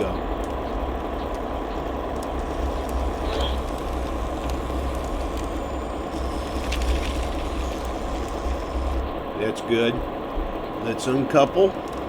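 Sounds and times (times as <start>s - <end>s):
toy train motor humming: 0.0s - 9.4s
faint clicks: 0.2s - 9.2s.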